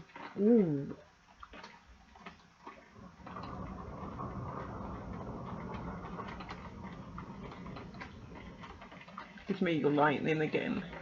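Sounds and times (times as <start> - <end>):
rain drops ticking: 0.0 - 11.0
thunder rumbling: 3.0 - 9.0.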